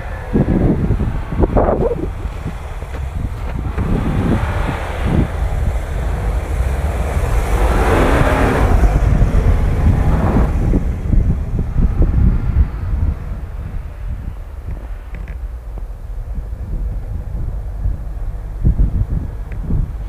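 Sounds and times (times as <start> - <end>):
car engine revving hard: 0.0 - 15.0.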